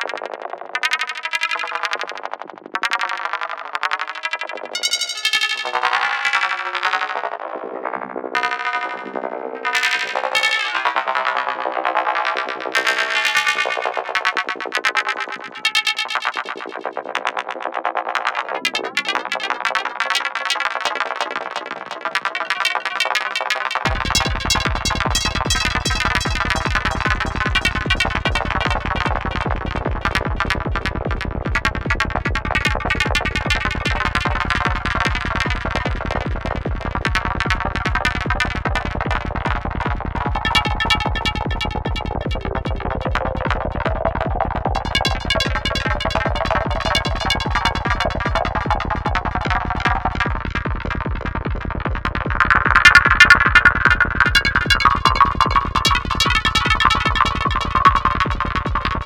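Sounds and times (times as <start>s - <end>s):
warbling synth effects: 19.1s - 36.5s, 40.4s - 59.0s
kick and rolling bass pulse: 23.6s - 59.0s.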